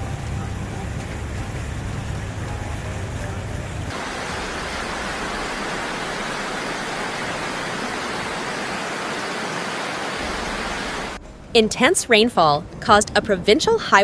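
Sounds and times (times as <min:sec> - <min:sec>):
rushing water: 0:00.0 - 0:11.2.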